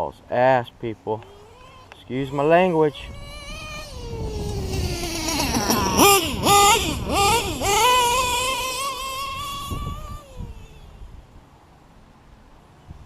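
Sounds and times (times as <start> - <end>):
nitro engine screaming: 1.2 - 11.0.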